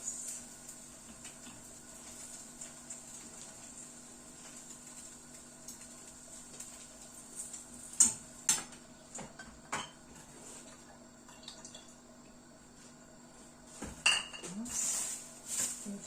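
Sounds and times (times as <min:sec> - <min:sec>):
faint steady hum: 0:00.0 - 0:16.0
utensils clinking on dishes: 0:14.0 - 0:14.6.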